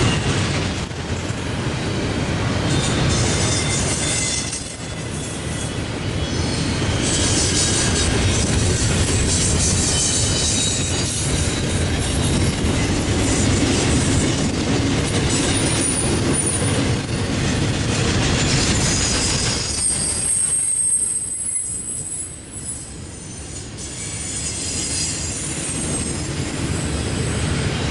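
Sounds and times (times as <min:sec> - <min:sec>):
train wheels rumbling on rail: 0:00.0 - 0:27.9
high-pitched wheel squeal: 0:02.7 - 0:08.1, 0:18.8 - 0:27.2.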